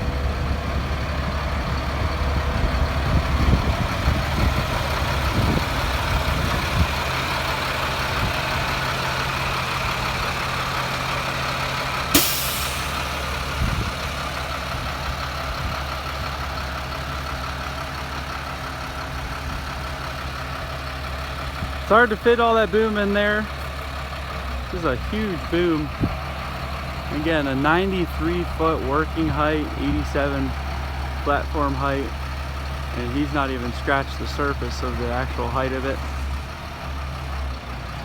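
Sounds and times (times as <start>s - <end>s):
diesel engine running: 0.0s - 38.0s
sharp sound with short hiss: 12.2s - 13.8s.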